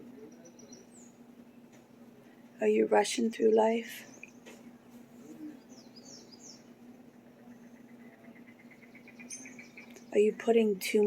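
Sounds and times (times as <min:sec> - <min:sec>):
faint wild birds chirping: 0:00.0 - 0:11.0
bird trill: 0:00.2 - 0:01.2, 0:05.5 - 0:06.7, 0:07.4 - 0:10.2.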